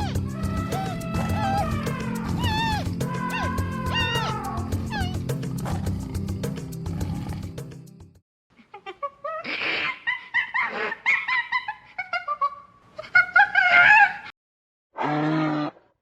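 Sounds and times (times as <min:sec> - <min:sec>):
high chirping animal calls: 0:00.0 - 0:05.3.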